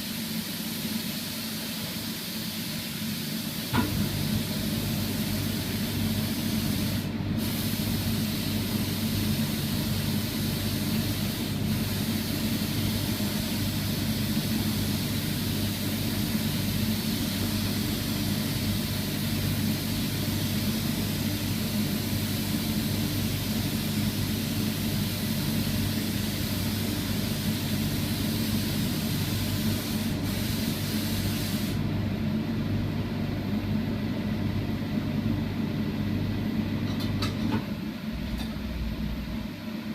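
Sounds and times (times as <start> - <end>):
spray gun hissing: 0.0 - 31.8
low machine hum: 31.8 - 39.9.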